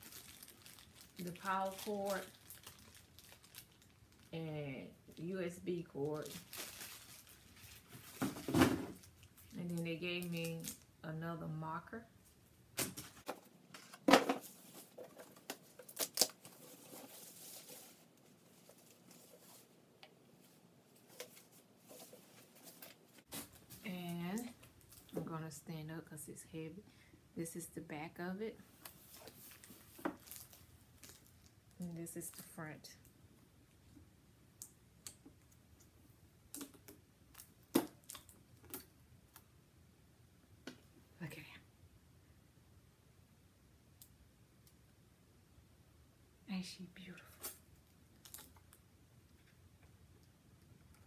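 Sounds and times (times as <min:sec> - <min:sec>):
soft rustling: 0:13.0 - 0:25.2, 0:28.6 - 0:31.5.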